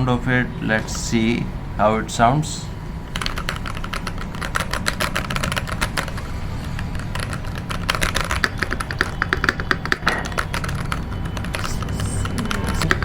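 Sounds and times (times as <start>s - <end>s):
mechanical keyboard typing: 3.1s - 13.0s.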